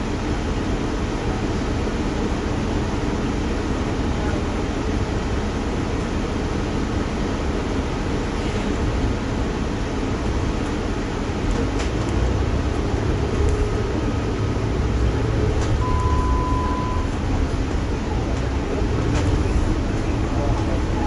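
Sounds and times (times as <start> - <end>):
bus engine and road rumble: 0.0 - 21.0
short steady beep: 15.8 - 17.2.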